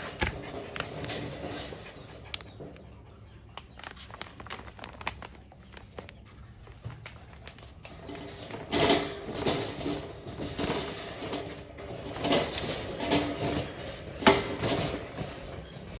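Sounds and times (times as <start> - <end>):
sharp knocks and clatters: 0.0 - 3.0, 6.7 - 16.0.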